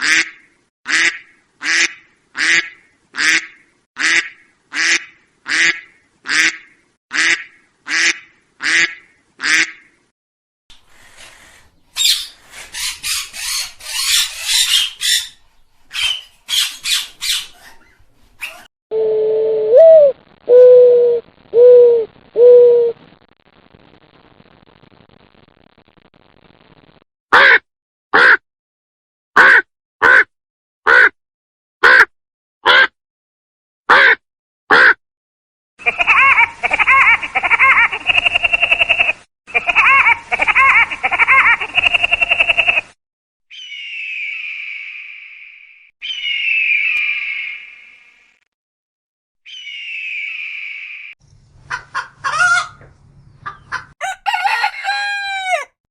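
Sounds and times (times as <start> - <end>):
bird giving harsh raspy calls: 54.0 - 55.7.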